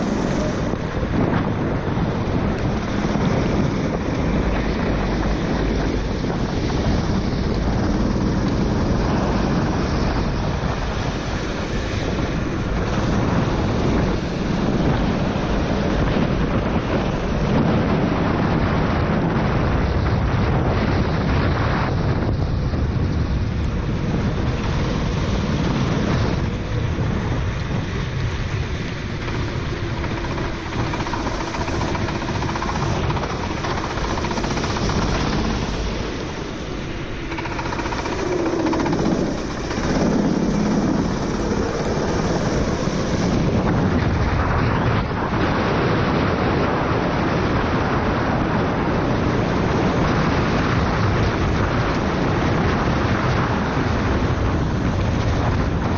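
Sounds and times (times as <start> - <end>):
wind rush on microphone: 0.0 - 55.9
kart engine revving: 28.8 - 43.9.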